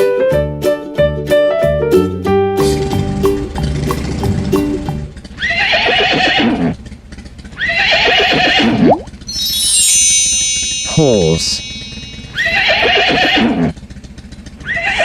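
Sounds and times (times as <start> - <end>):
horse whinnying: 5.4 - 6.8, 7.6 - 8.8, 12.4 - 13.8, 14.6 - 15.0
children's music: 9.2 - 12.6
shimmering chime: 9.2 - 13.2.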